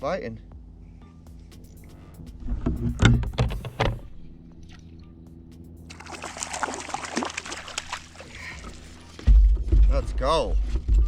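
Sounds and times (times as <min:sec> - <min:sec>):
background music: 0:00.0 - 0:11.0
fish splashing in water: 0:05.9 - 0:09.2.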